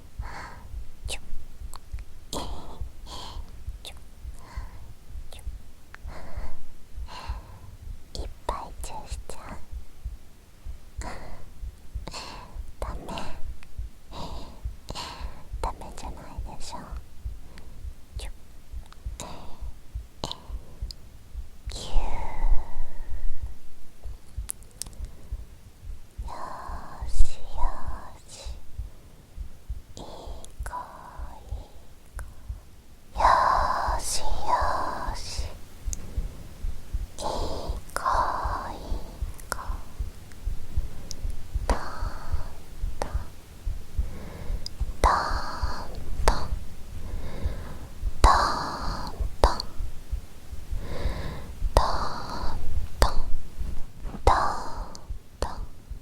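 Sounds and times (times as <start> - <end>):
woman whispering: 0.0 - 10.2, 10.9 - 25.2, 26.1 - 28.9, 29.8 - 56.0
heartbeat: 0.0 - 56.0
mouth clicks: 0.2 - 9.9, 11.0 - 21.0, 21.7 - 25.2, 33.2 - 55.8
soft clicks: 24.2 - 25.1
breaths into microphone: 44.0 - 45.0, 45.6 - 48.1, 50.7 - 54.9.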